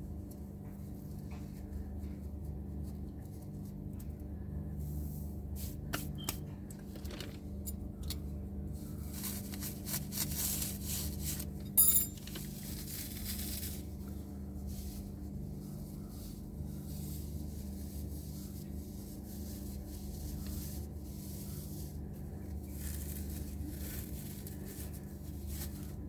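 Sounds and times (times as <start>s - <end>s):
plastic scraping and crackling: 6.7s - 7.6s.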